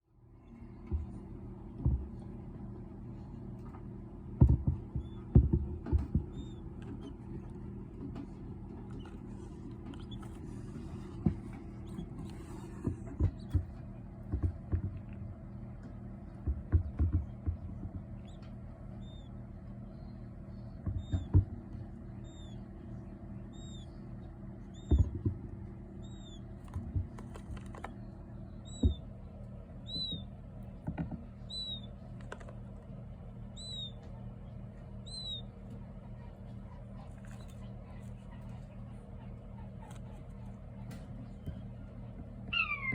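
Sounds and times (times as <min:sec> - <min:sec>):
low hum: 0:00.0 - 0:42.9
quail chicks peeping: 0:00.5 - 0:42.9
dull knocks and thumps: 0:00.7 - 0:02.4, 0:03.6 - 0:19.2, 0:20.6 - 0:22.6, 0:24.7 - 0:32.7.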